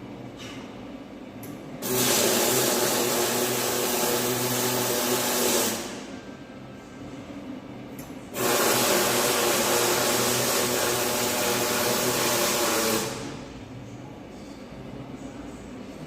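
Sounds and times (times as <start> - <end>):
low background hum: 0.0 - 1.8, 4.2 - 8.4, 9.0 - 16.0
electric welding arc sizzling: 1.8 - 6.1, 8.3 - 13.4.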